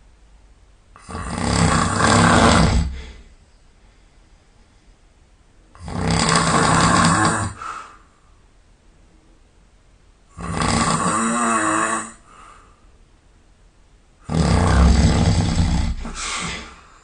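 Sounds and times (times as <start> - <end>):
person snoring loudly: 1.0 - 3.2, 5.8 - 7.7, 10.3 - 12.4, 14.2 - 16.8.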